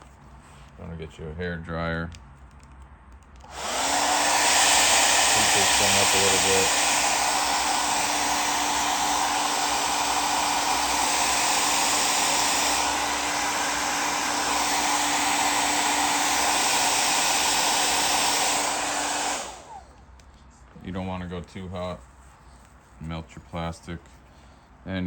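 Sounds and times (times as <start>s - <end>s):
hair dryer blowing: 3.4s - 20.0s.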